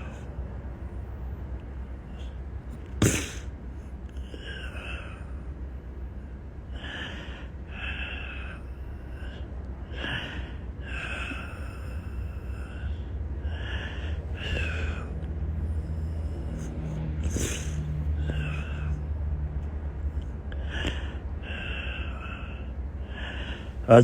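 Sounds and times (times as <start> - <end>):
steady low hum: 0.0 - 24.0
man breathing through congested nose: 2.0 - 19.2, 19.9 - 23.8.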